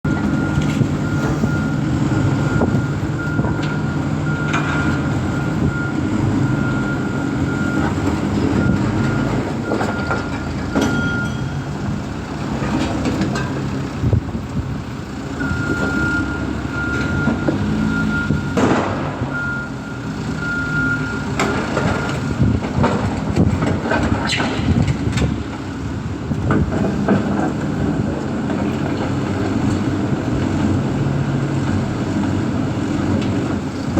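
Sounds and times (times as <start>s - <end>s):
diesel machinery engine running: 0.0s - 33.9s
back-up alarm beeping: 0.1s - 8.0s, 8.6s - 11.8s, 15.4s - 18.6s, 19.3s - 22.4s
metal clanks and knocks: 8.0s - 11.7s, 12.5s - 13.8s.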